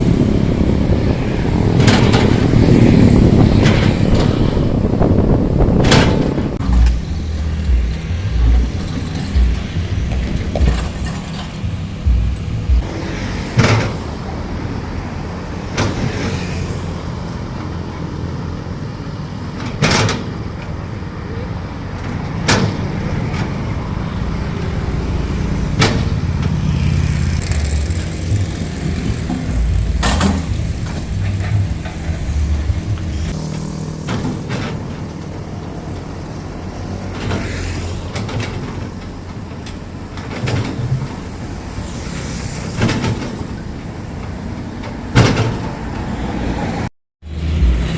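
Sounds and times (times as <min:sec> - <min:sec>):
excavator diesel engines: 0:00.0 - 0:47.9
sharp metallic knocks: 0:05.8 - 0:14.2, 0:25.7 - 0:35.4.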